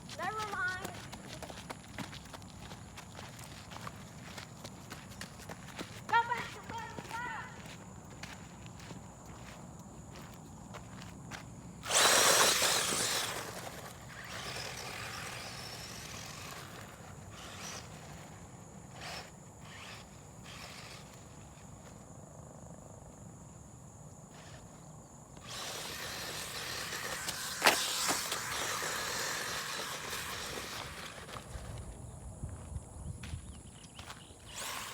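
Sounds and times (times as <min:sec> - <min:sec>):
tyres rustling on dirt: 0:00.0 - 0:22.5, 0:24.4 - 0:34.9
toy truck electric motor: 0:11.8 - 0:22.0, 0:24.3 - 0:32.1, 0:34.4 - 0:34.9.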